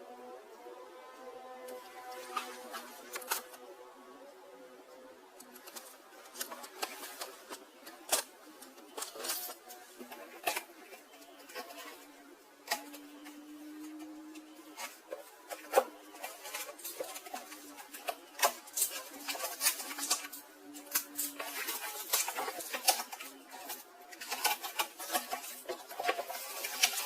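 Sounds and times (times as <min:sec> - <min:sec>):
packaging and cookware clicking: 0:05.5 - 0:27.0.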